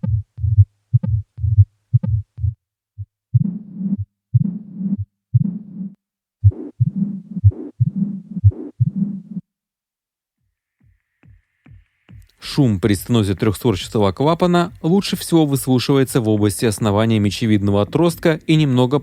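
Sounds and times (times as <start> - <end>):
low rumbling heart murmur: 0.0 - 5.5
heartbeat thumps: 0.0 - 9.4, 10.8 - 12.5.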